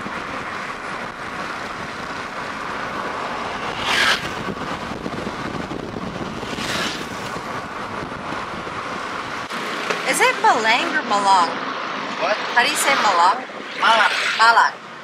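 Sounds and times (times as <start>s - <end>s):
car road and engine noise: 0.0s - 15.0s
brief whooshes: 3.5s - 4.6s, 6.4s - 7.4s.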